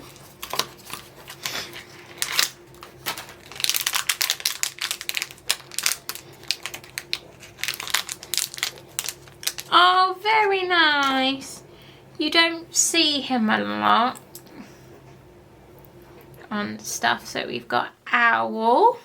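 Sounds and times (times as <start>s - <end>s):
packaging crinkling and tearing: 0.0s - 9.8s.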